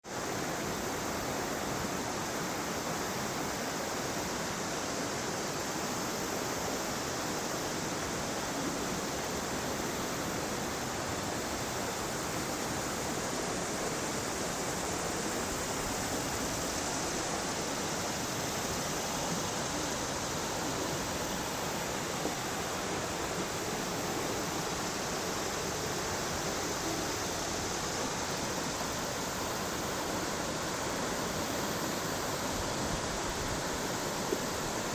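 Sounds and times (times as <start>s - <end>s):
river rushing over rocks: 0.1s - 34.9s.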